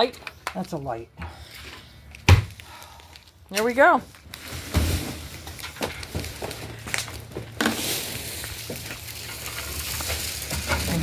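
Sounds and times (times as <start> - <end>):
packaging rustling: 4.1 - 11.0.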